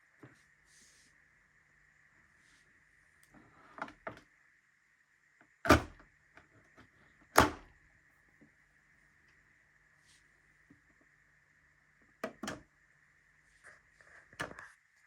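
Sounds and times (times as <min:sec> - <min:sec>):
faint high whine: 0:00.0 - 0:15.0
hard plastic clunks: 0:07.4 - 0:07.6.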